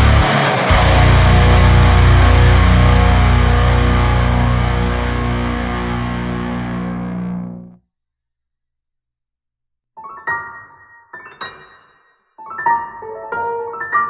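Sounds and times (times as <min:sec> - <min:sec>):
distorted electric guitar chord: 0:00.0 - 0:07.8
heavy metal music: 0:00.0 - 0:07.8.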